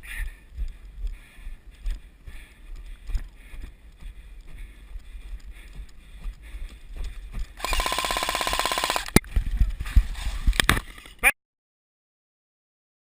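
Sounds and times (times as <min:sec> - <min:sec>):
loud rapid rattle: 0:07.6 - 0:09.2
wind buffeting microphone: 0:09.2 - 0:10.8.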